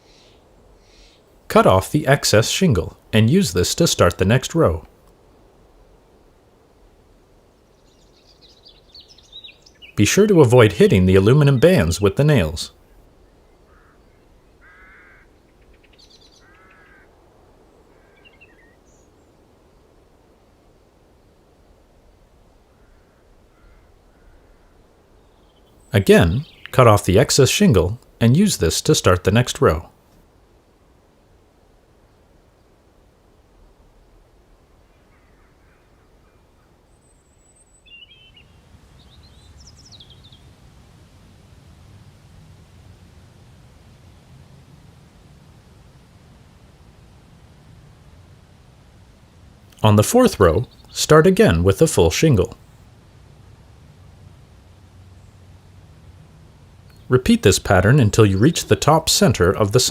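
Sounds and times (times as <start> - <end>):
drawn-out bird calls: 0.0 - 4.8, 8.0 - 12.7, 13.6 - 17.2, 17.8 - 18.9, 22.8 - 29.9, 53.5 - 59.9
bird chirps: 7.8 - 12.5, 25.2 - 28.0, 35.1 - 40.6
bird ticking notes: 25.5 - 29.8.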